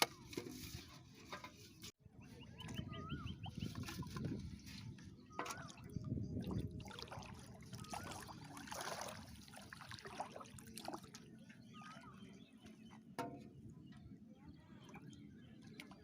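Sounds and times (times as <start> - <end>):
water trickling and sloshing: 2.5 - 16.0.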